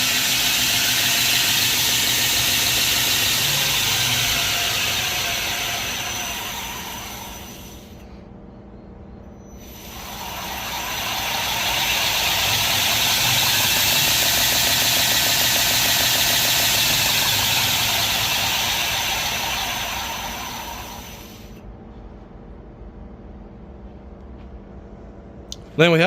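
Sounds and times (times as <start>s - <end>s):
grinder motor hum: 0.0s - 8.1s, 9.6s - 21.6s.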